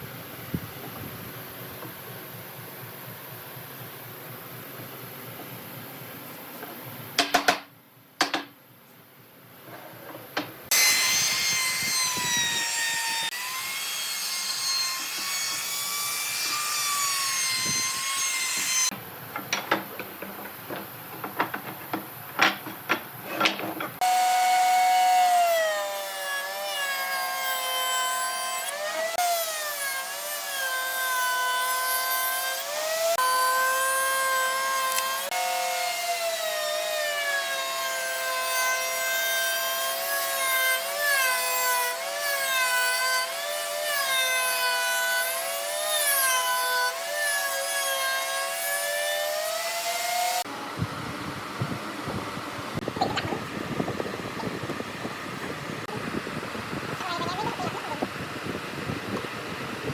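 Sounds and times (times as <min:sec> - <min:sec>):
wood knocking and clattering: 0:06.6 - 0:08.6, 0:19.3 - 0:24.0
power tool cutting wood: 0:10.7 - 0:19.0, 0:23.3 - 0:50.8.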